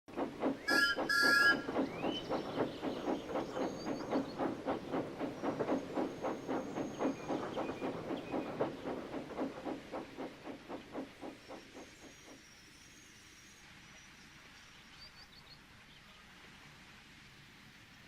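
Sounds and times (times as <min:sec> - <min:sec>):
wagon wheels clacking over rail joints: 0:00.1 - 0:11.5
steam whistle blasts: 0:00.7 - 0:01.6.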